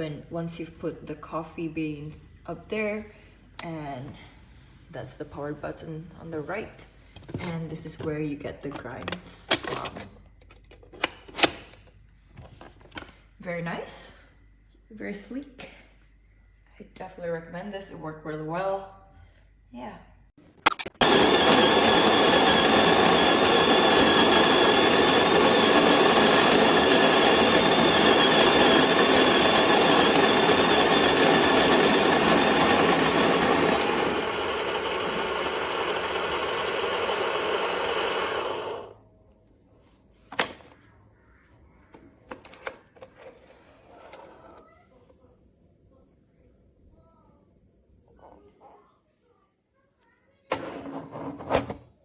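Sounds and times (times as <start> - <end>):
coffee grinder motor whirring: 20.9 - 39.0.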